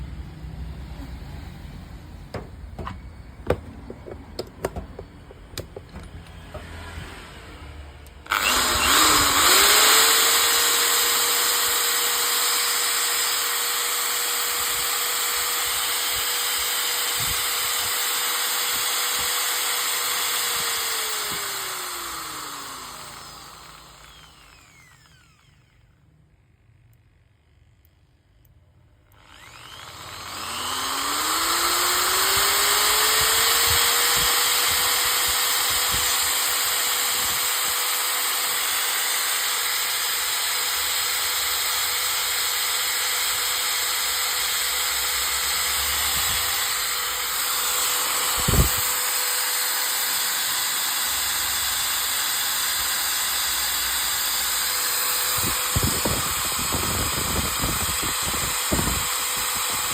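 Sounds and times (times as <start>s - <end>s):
sharp knocks: 2.3s - 6.7s
electric drill whining: 2.3s - 26.0s, 29.1s - 59.9s.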